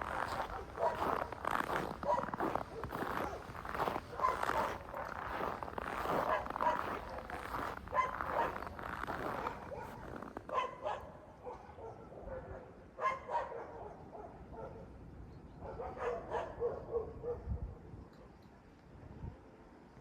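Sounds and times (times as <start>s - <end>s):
dog barking and yipping: 0.1s - 14.8s.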